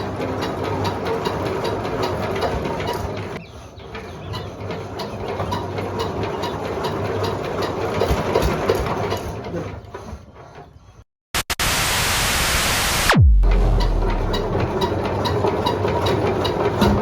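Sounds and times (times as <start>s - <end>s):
loud hissing burst: 11.4s - 14.8s
deep engine hum: 13.1s - 15.3s.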